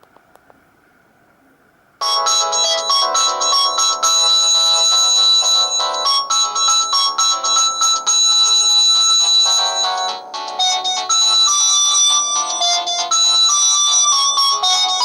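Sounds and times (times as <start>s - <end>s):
phone ringtone melody: 2.0s - 15.0s.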